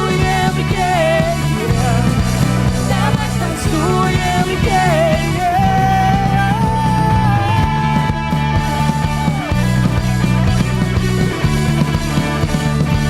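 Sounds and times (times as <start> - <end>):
live rock worship band: 0.0 - 13.0.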